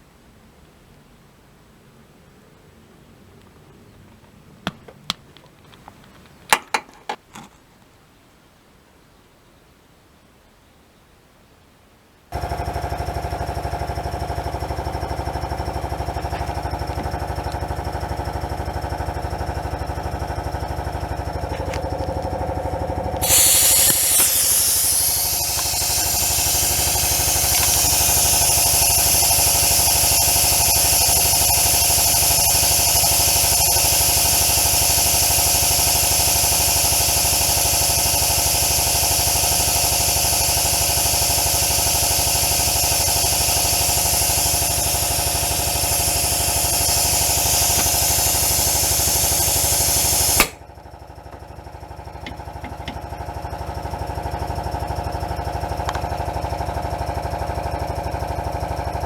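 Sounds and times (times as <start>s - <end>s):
car engine idling: 12.4s - 59.0s
loud steady hiss: 21.4s - 50.6s.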